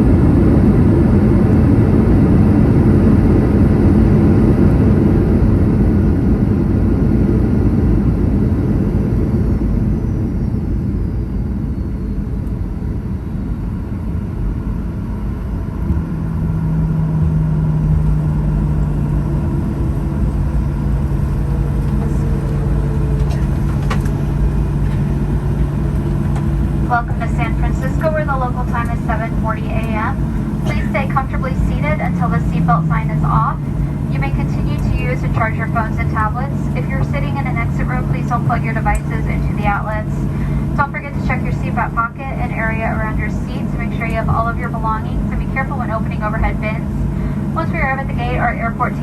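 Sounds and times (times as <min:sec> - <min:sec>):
jet engines and wheels rumbling: 0:00.0 - 0:49.0
steady low hum: 0:00.0 - 0:49.0.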